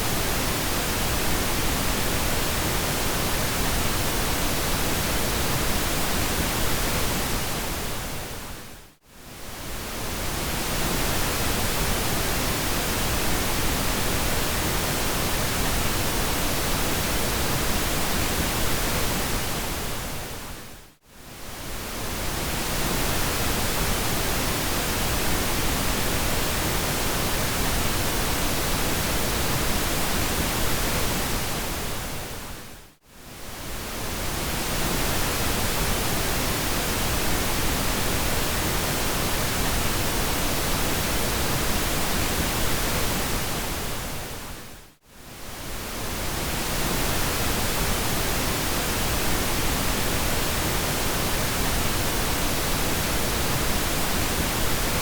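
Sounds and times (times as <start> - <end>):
pink noise hiss: 33.2 - 55.0.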